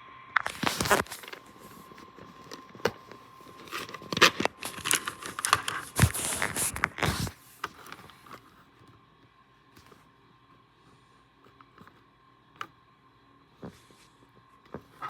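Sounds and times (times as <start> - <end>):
crinkling: 0.4 - 8.6
handling noises scraping: 0.4 - 8.6.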